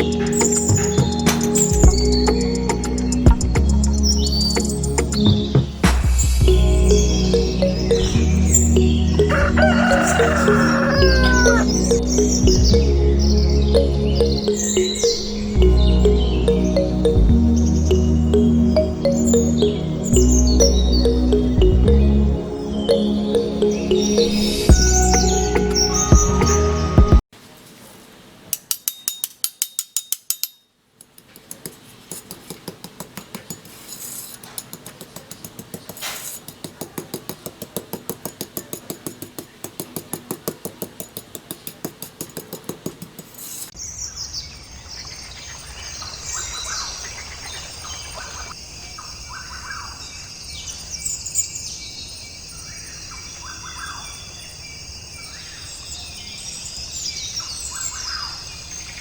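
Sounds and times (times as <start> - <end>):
birds chirping: 0.0 - 27.2, 41.2 - 59.0
rapid even clicking: 31.0 - 43.7.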